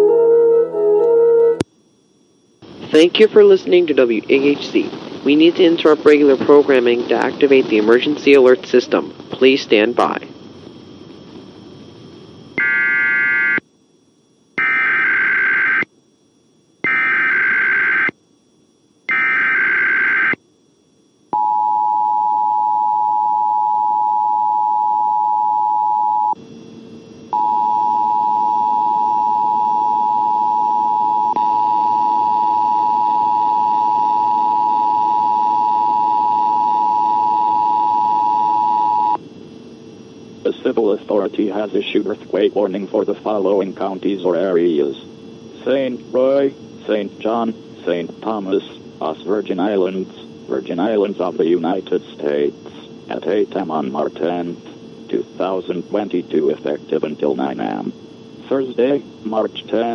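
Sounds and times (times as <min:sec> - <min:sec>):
two-tone attention signal: 0:00.0 - 0:01.6
screechy digital data tones: 0:16.8 - 0:18.2, 0:19.1 - 0:20.4.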